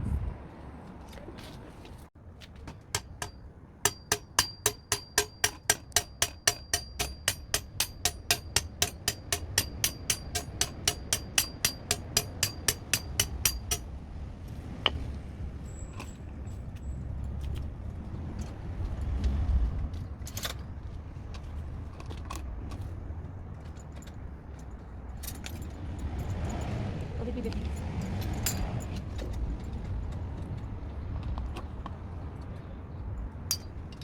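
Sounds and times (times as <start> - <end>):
hammer striking metal pole: 2.7 - 13.9.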